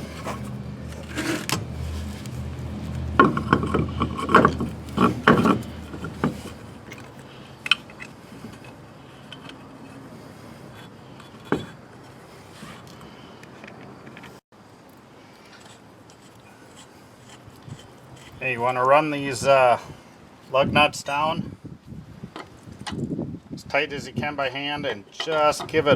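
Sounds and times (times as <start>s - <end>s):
lug nuts handled: 0.0s - 14.4s
wheel clattering and scraping: 0.0s - 14.4s.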